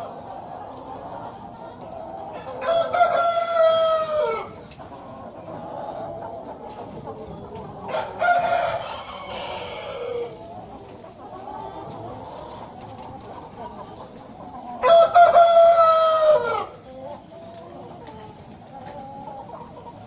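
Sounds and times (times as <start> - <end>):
chickens clucking: 0.0 - 20.0
roosters crowing: 2.4 - 4.6, 7.8 - 10.4, 14.8 - 16.9.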